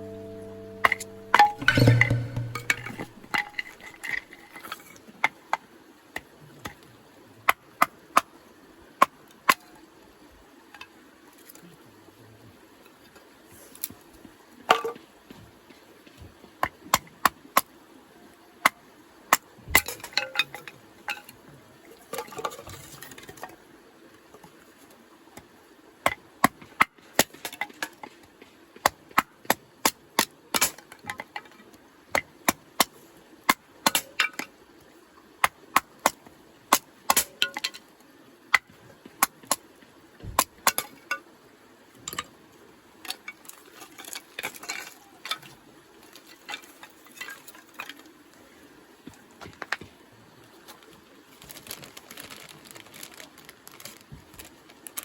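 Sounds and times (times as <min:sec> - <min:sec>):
firewood crackling and popping: 0:51.4 - 0:55.0.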